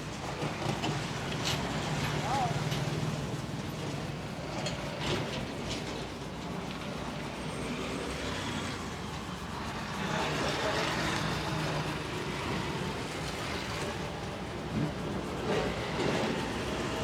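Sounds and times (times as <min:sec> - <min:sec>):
passing traffic rumble: 0:00.4 - 0:05.7.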